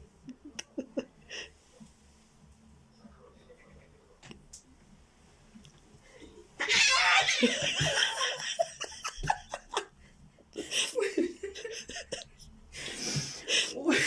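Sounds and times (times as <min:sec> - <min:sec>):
person laughing: 0:06.8 - 0:09.9, 0:10.6 - 0:12.4.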